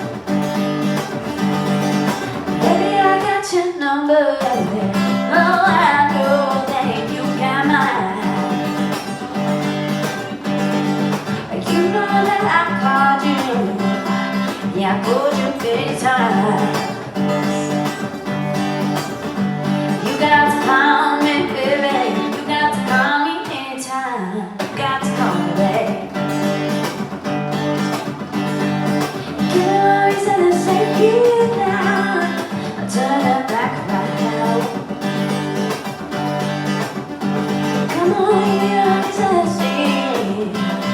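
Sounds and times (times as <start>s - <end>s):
strummed acoustic guitar: 0.0s - 40.9s
person singing: 2.6s - 9.4s, 11.0s - 19.2s, 19.9s - 26.4s, 29.2s - 35.5s, 37.6s - 40.9s.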